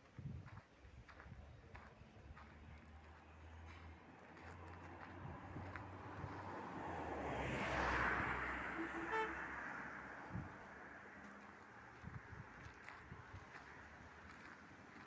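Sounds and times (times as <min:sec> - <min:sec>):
vehicle passing by: 0:02.5 - 0:15.0
vehicle horn toot: 0:08.6 - 0:09.6.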